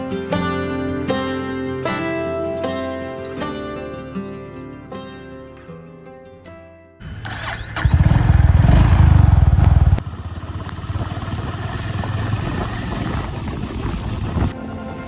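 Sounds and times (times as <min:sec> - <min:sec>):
motorcycle engine running: 0:07.0 - 0:14.6.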